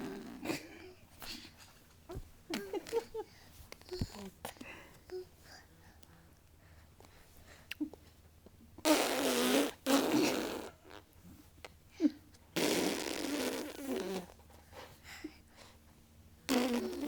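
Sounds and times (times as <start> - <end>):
person blowing raspberries: 8.8 - 11.0, 12.6 - 14.4, 16.5 - 17.0.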